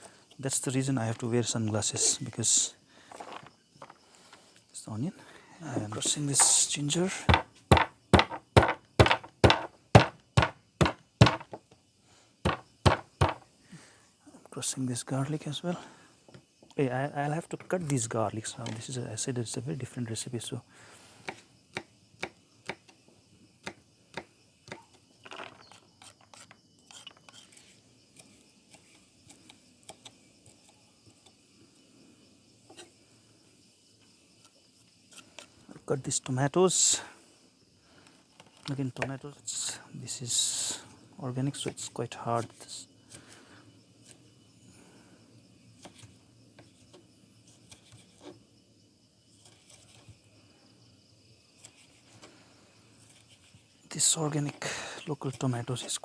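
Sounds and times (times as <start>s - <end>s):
insects chirping: 0.0s - 56.0s
knife chopping on cutting board: 7.3s - 11.4s.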